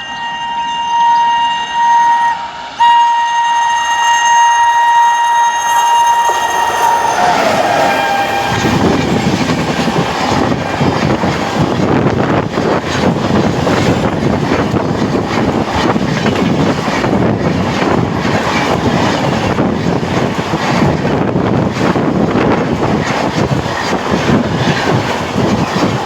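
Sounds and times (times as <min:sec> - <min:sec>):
train passing at full speed: 0:00.0 - 0:26.0
wheel clatter over rail joints: 0:05.3 - 0:26.0
wind buffeting microphone: 0:05.6 - 0:26.0.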